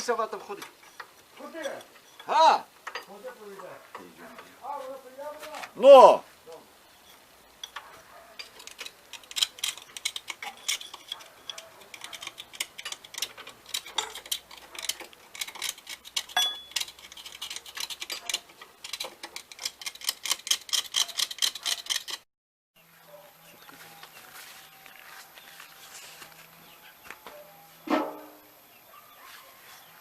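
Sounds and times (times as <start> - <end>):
hand tools clicking on bolts: 7.6 - 22.2.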